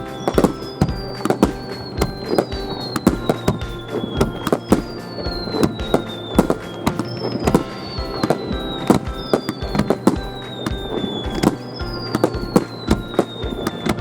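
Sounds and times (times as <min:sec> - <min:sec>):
fireworks bursting with sharp bangs: 0:00.0 - 0:14.0
high falling whistles: 0:00.0 - 0:14.0.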